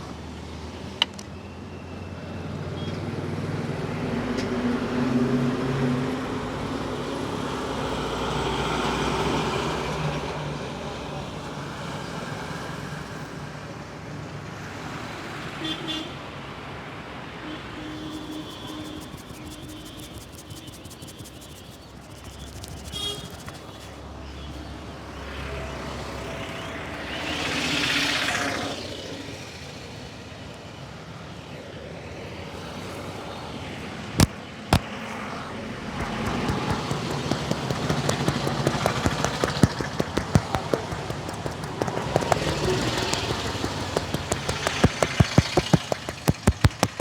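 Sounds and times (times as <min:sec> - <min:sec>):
street traffic: 0:14.4 - 0:47.0
rapid hand taps on head: 0:18.1 - 0:23.9, 0:34.2 - 0:34.9, 0:36.0 - 0:47.0
sharp cracks: 0:36.0 - 0:47.0.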